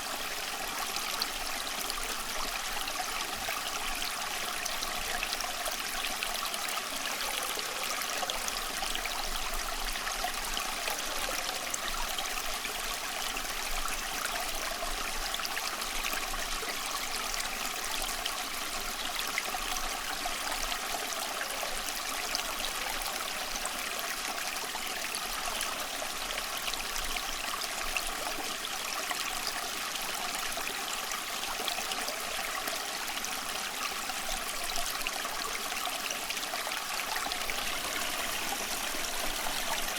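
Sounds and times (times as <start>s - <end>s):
stream water rushing: 15.4s - 39.9s.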